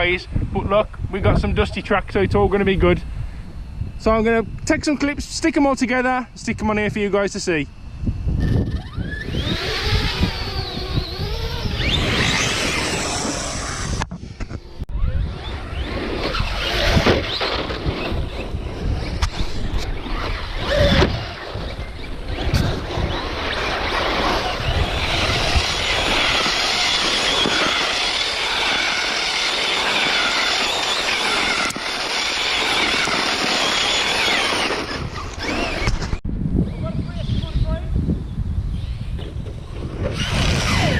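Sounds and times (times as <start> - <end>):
wind rumble on microphone: 0.0 - 40.9
electric motors whining: 7.7 - 36.2, 38.6 - 40.9
tyres on gravel: 15.4 - 36.2.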